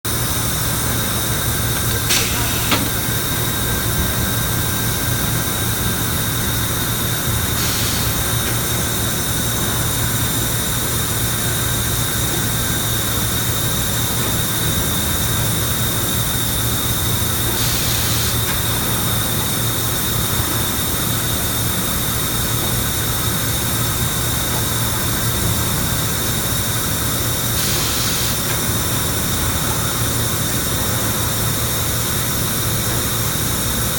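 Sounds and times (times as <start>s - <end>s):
industrial furnace humming: 0.1s - 33.9s
short hisses: 2.1s - 3.1s.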